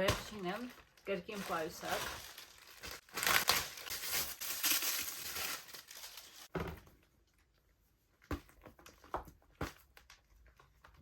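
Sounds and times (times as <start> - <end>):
packaging crinkling and rustling: 0.0 - 6.5.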